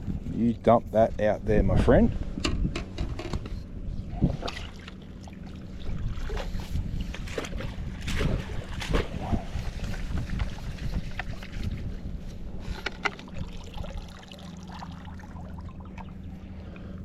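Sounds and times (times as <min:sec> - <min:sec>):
low steady rumble: 0:00.0 - 0:17.0
water slapping at boat hull: 0:04.3 - 0:11.8.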